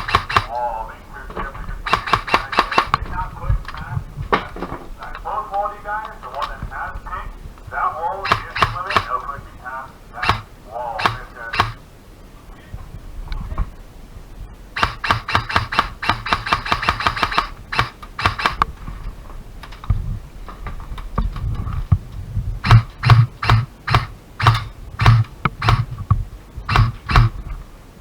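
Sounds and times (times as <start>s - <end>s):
airsoft gun firing: 0.0s - 0.7s, 1.9s - 3.2s, 8.2s - 9.3s, 10.2s - 11.8s, 14.8s - 18.8s, 22.6s - 25.9s, 26.7s - 27.4s
sharp cracks: 0.0s - 0.8s, 1.8s - 3.8s, 6.0s - 6.6s, 8.2s - 9.4s, 10.2s - 11.8s, 14.8s - 18.8s, 22.6s - 26.0s, 26.7s - 27.4s
low thuds: 6.2s - 11.9s, 14.7s - 27.7s.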